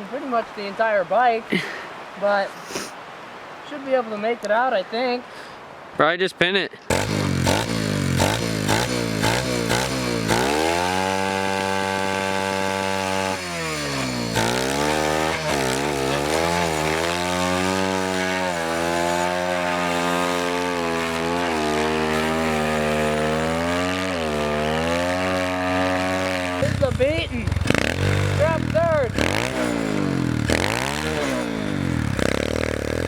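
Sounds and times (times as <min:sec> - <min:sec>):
small motorbike engine revving hard: 0:06.9 - 0:33.0.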